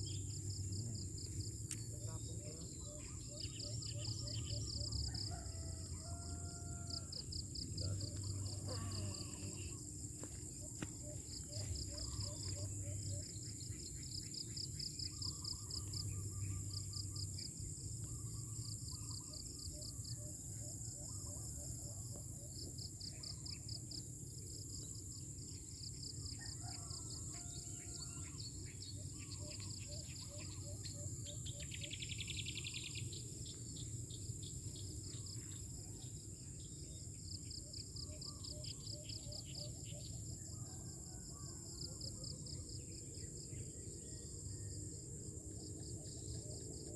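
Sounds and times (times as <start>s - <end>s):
high-pitched insect drone: 0.0s - 20.0s
cricket chirping: 0.0s - 46.9s.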